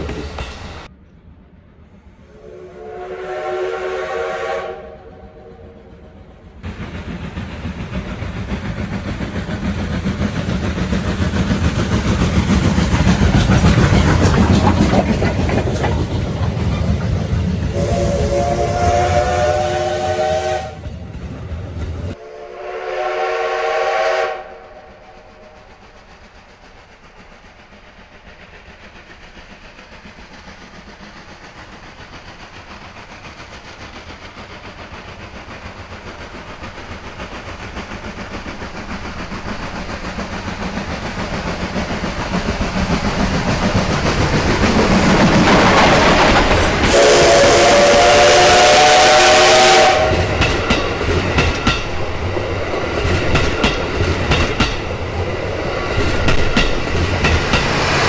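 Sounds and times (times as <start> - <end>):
steam locomotive chugging: 0.0 - 58.0
steam locomotive whistle: 2.3 - 5.8, 17.7 - 20.9, 22.1 - 25.7, 46.6 - 50.8.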